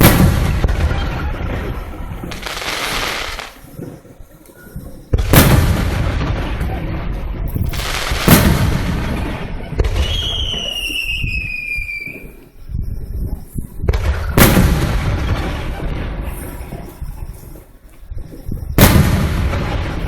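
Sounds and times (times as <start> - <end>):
fireworks booming: 0.0 - 12.6, 13.8 - 20.0
high firework whistle: 1.7 - 3.6, 9.5 - 12.4
low rumbling echo: 4.8 - 10.7.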